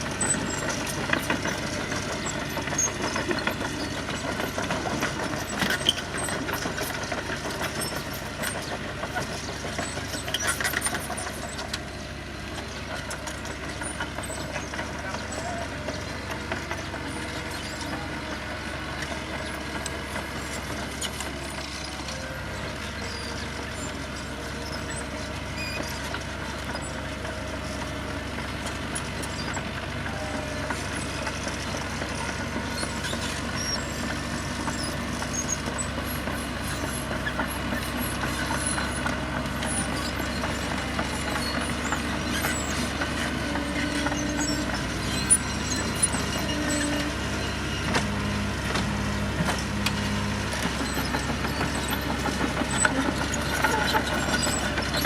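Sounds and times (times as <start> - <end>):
heavy diesel machinery running: 0.0 - 55.0.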